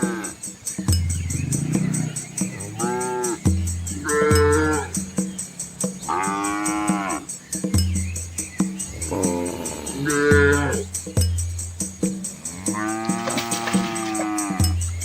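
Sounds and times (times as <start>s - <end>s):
background music with shaker beat: 0.0s - 15.0s
cattle mooing: 1.3s - 5.0s, 5.6s - 7.3s, 9.0s - 10.9s, 12.4s - 14.8s.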